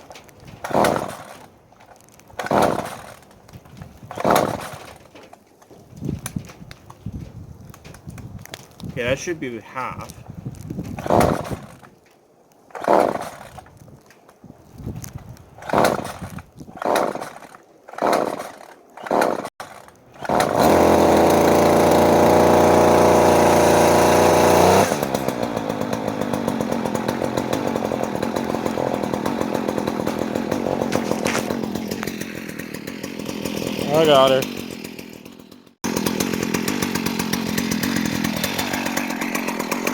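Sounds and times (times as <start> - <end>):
chainsaw engine running: 0.5 - 1.5, 2.4 - 3.3, 4.1 - 5.1, 11.0 - 11.9, 12.7 - 13.7, 15.6 - 39.9.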